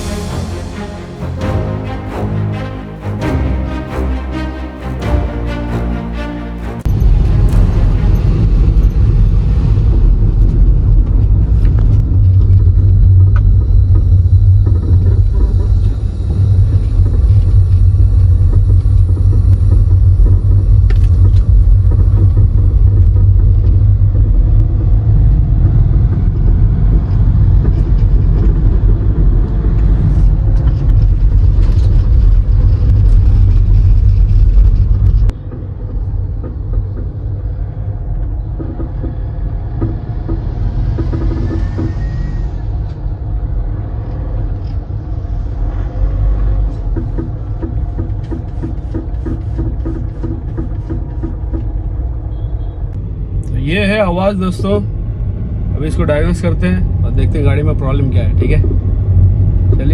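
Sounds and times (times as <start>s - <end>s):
suspension knocking: 6.8s - 52.9s
car road rumble: 6.8s - 59.9s.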